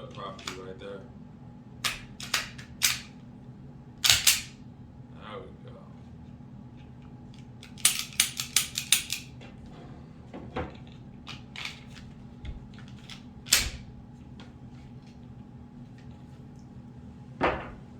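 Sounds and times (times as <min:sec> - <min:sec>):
pistol metal clicks: 0:01.8 - 0:03.1, 0:04.0 - 0:04.6, 0:07.6 - 0:09.2.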